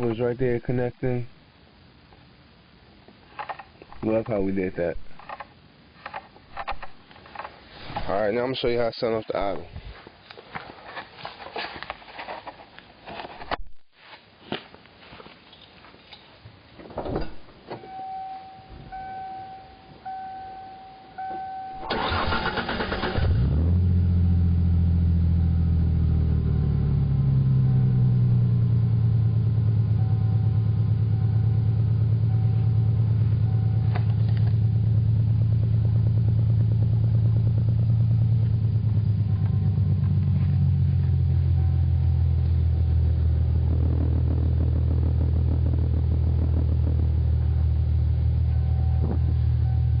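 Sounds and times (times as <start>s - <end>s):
car chime beeping: 17.8s - 22.7s
engine starter cranking: 21.8s - 23.7s
car engine idling: 21.8s - 50.0s.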